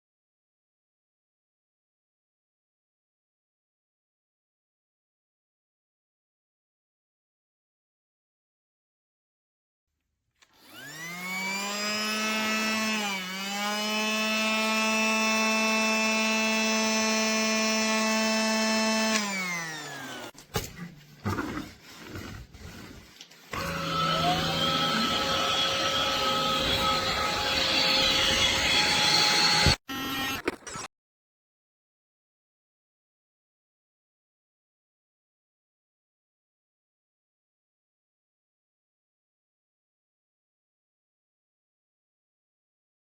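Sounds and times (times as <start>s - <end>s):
toy vacuum motor whining: 10.4s - 20.4s, 21.3s - 30.8s.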